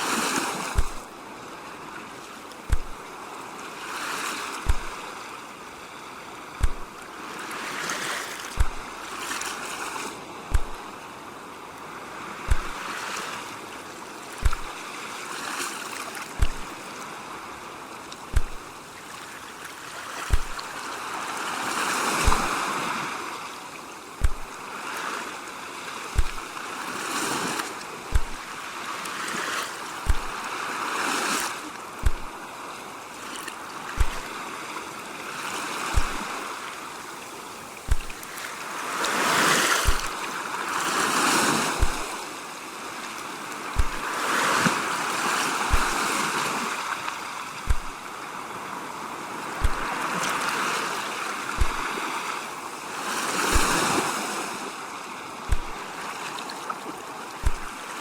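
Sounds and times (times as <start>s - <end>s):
ocean waves washing in: 0.0s - 58.0s
short low thump: 0.7s - 1.1s, 2.7s - 3.0s, 4.7s - 5.0s, 6.6s - 7.0s, 8.5s - 9.0s, 10.5s - 10.8s, 12.5s - 12.8s, 14.4s - 14.8s, 16.4s - 16.7s, 18.3s - 18.7s, 20.3s - 20.6s, 22.2s - 22.5s, 24.2s - 24.6s, 26.2s - 26.4s, 28.1s - 28.5s, 30.1s - 30.4s, 32.0s - 32.3s, 34.0s - 34.3s, 36.0s - 36.2s, 37.9s - 38.2s, 39.8s - 40.2s, 41.8s - 42.1s, 43.8s - 44.0s, 45.7s - 46.0s, 47.7s - 48.0s, 49.6s - 49.9s, 51.6s - 51.9s, 53.5s - 53.8s, 55.5s - 55.8s, 57.4s - 57.8s.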